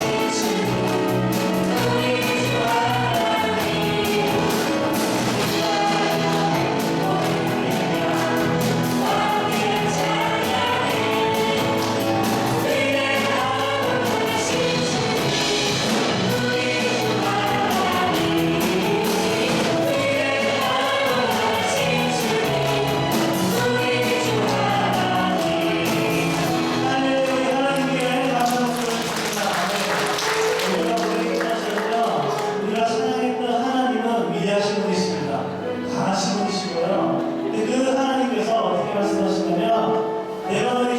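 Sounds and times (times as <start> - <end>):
choir singing gospel: 0.0 - 40.9
musical accompaniment: 0.0 - 40.9.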